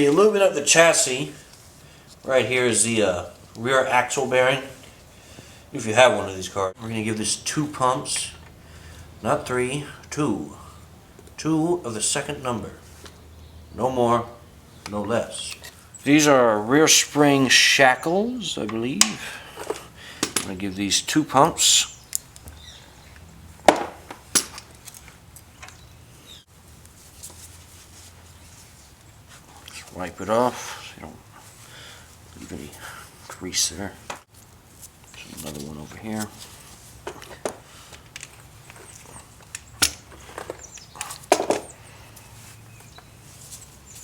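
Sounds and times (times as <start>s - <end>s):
grease gun metallic clicks: 22.0s - 23.3s, 37.0s - 41.7s.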